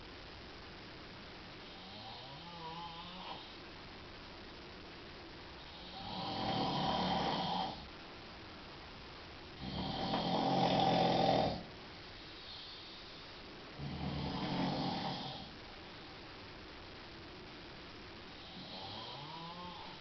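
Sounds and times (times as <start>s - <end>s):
man snoring loudly: 1.7s - 3.5s, 5.7s - 7.8s, 9.6s - 11.7s, 13.8s - 15.5s, 18.4s - 20.0s.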